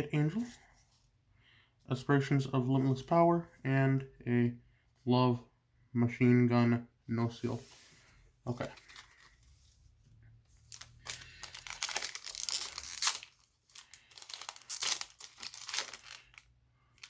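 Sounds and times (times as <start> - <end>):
wrapper tearing and crinkling: 10.7 - 17.0.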